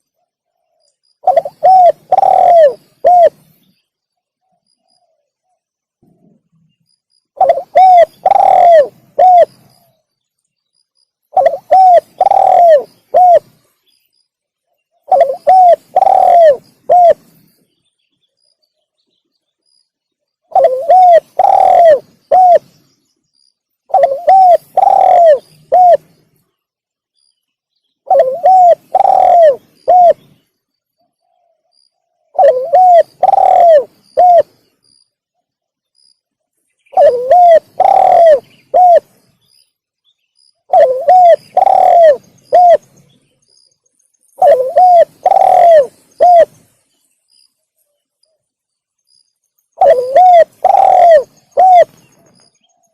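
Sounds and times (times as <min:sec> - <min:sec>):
dove cooing: 0:00.6 - 0:03.5, 0:07.4 - 0:09.9, 0:11.3 - 0:13.6, 0:15.0 - 0:17.3, 0:20.5 - 0:22.7, 0:23.9 - 0:26.2, 0:28.1 - 0:30.4, 0:32.3 - 0:34.6, 0:36.9 - 0:39.1, 0:40.7 - 0:43.0, 0:44.4 - 0:46.7, 0:49.8 - 0:52.0.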